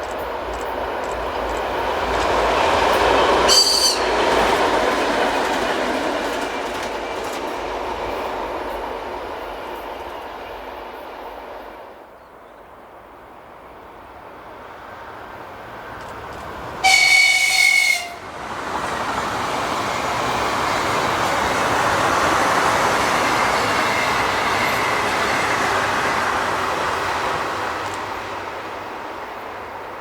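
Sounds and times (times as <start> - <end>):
train wheels rushing on rails: 0.0 - 30.0
train horn blast: 3.5 - 4.3, 16.8 - 18.3.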